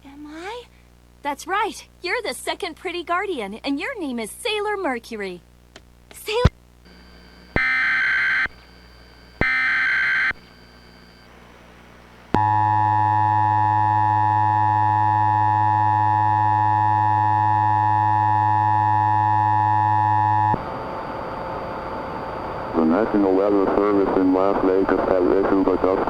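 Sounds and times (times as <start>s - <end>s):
buzzy data-tone bursts: 6.3s - 11.2s.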